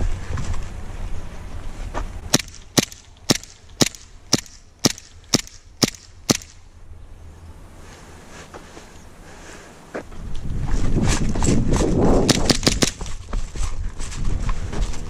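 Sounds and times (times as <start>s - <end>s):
airsoft gun shots: 2.3s - 6.6s, 12.2s - 13.1s.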